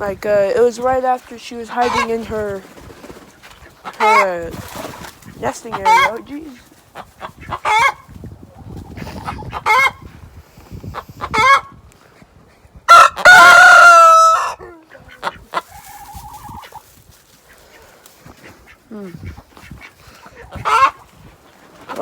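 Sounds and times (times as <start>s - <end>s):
hen clucking: 0.0s - 10.1s, 10.8s - 11.8s, 12.9s - 22.0s
hen squawking: 1.7s - 2.4s, 5.2s - 8.0s, 13.0s - 21.1s.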